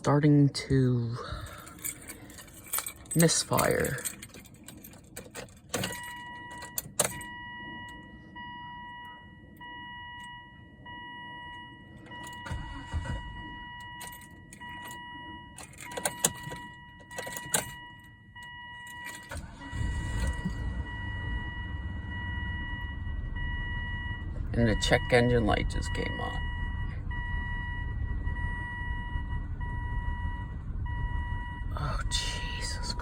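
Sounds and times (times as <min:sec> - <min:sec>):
engine rumble with misfire: 0:11.8 - 0:18.1, 0:18.8 - 0:33.0.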